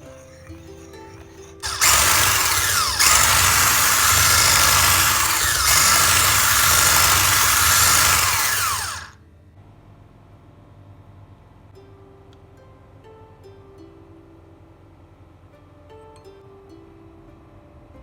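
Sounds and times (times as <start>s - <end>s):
kitchen appliance motor running: 0.0s - 9.2s.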